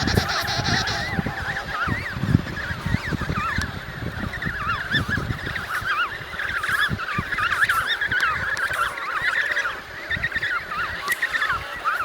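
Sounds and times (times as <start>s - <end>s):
penguins chirping: 0.0s - 3.6s.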